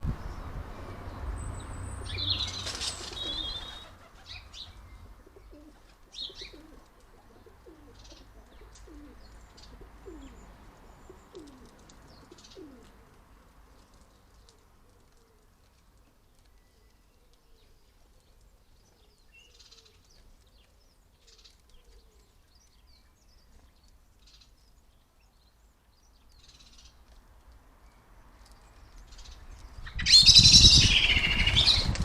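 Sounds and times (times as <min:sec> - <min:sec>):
short low falling bird calls: 0:01.9 - 0:09.4
blackbird screeching chatter: 0:02.1 - 0:03.9, 0:29.8 - 0:32.0.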